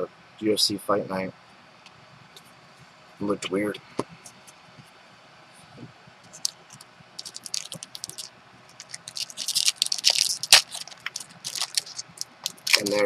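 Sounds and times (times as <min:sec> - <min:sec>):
cards scraping and clicking: 0:06.3 - 0:13.0.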